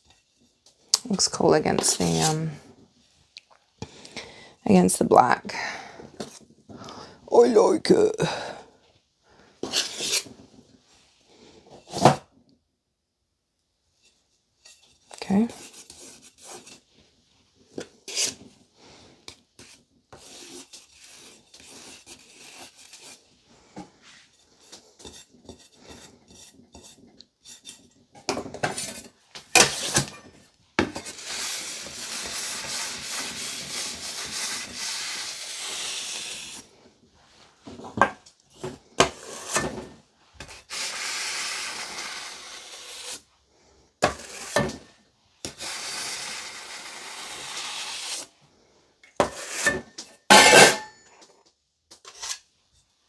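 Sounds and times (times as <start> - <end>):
metal tool scraping buttercream: 9.6 - 10.4, 14.0 - 17.0, 17.8 - 36.7, 38.6 - 43.3, 44.0 - 44.8, 45.4 - 48.3.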